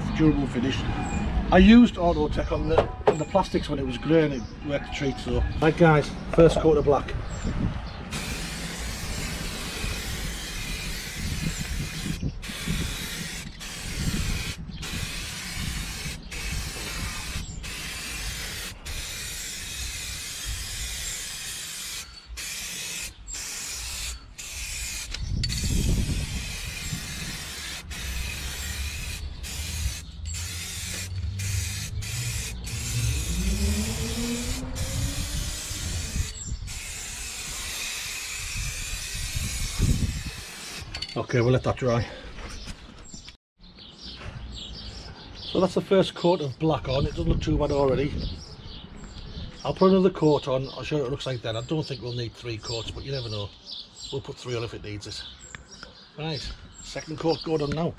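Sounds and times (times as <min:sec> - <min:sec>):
aerosol spray can hissing: 0:08.1 - 0:40.9
rising tone: 0:30.5 - 0:35.8.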